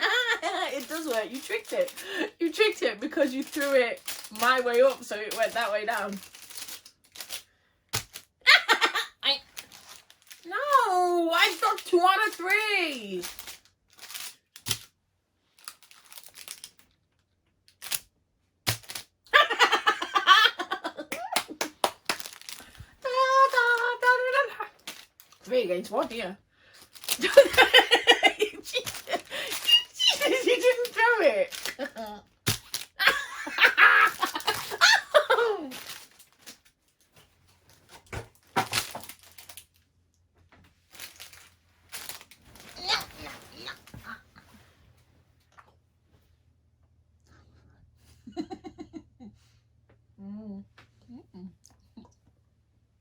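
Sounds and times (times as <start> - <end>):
person laughing: 0.0 - 0.9, 8.5 - 9.2, 19.3 - 21.7, 27.2 - 30.5, 33.0 - 35.7, 48.2 - 49.3
person cackling: 19.4 - 21.8, 33.0 - 35.7, 48.2 - 49.3.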